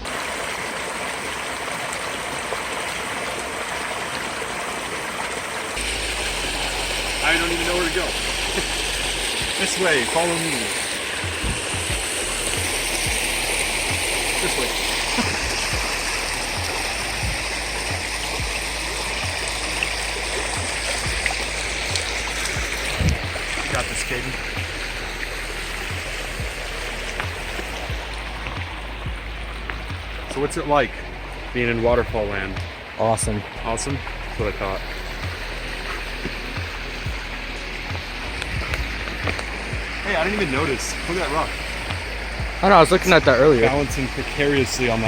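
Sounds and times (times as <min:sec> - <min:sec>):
water rushing over rocks: 0:00.0 - 0:45.0
short low thuds: 0:11.2 - 0:13.2.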